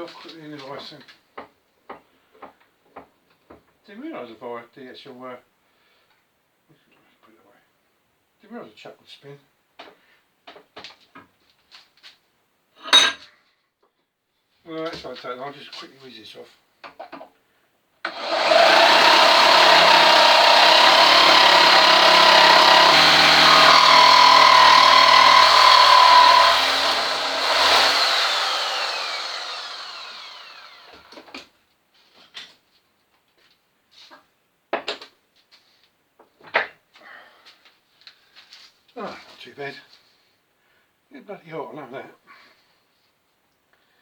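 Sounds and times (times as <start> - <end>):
power tool cutting: 18.1 - 31.2.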